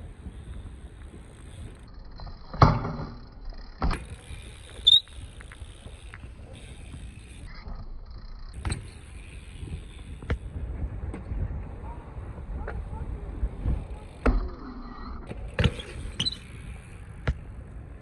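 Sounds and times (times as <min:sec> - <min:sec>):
bike rolling and wind noise: 0:00.0 - 0:18.0.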